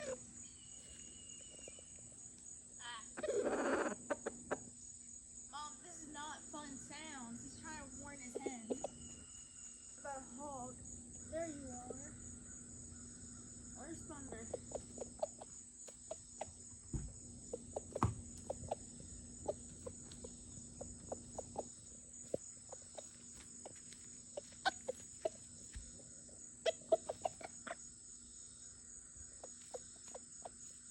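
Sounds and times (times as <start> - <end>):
crickets chirring: 0.0 - 30.9
rooster clucking: 3.1 - 4.7, 8.3 - 9.2, 14.3 - 16.7, 17.4 - 21.8, 24.3 - 25.5, 26.6 - 27.9.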